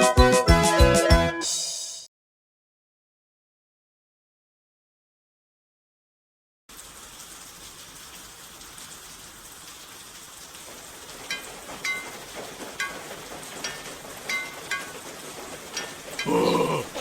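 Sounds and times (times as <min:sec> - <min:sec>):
steady hiss like rain: 0:06.7 - 0:17.0.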